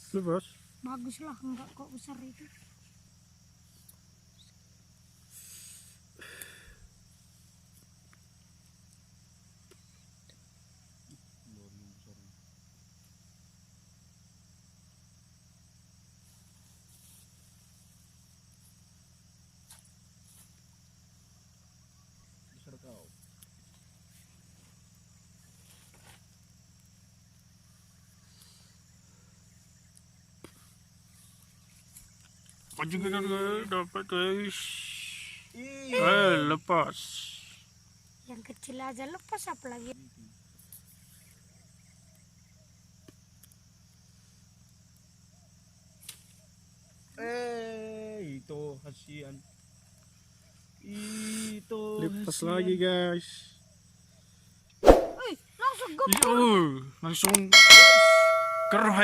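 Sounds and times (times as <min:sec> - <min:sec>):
insects trilling: 0:00.0 - 0:59.0
faint ticks: 0:07.7 - 0:10.4, 0:43.0 - 0:43.6.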